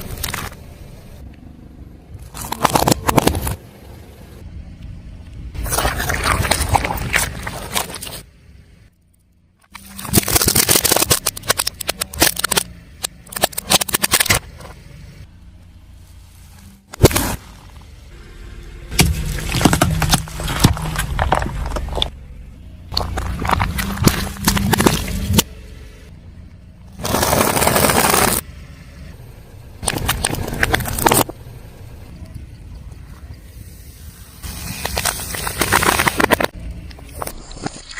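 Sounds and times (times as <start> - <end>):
car engine hum: 0.0 - 37.7
tyre crushing brittle crackles: 2.2 - 3.6, 9.7 - 14.5, 18.9 - 22.1, 22.9 - 25.4, 27.0 - 28.4, 29.8 - 31.3, 34.4 - 37.9.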